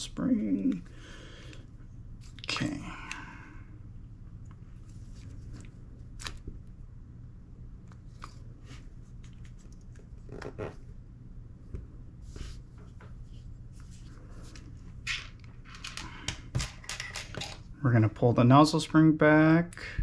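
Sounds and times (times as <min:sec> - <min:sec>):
steady low hum: 0:00.0 - 0:20.0
clicks and rustles of parts: 0:14.5 - 0:17.7.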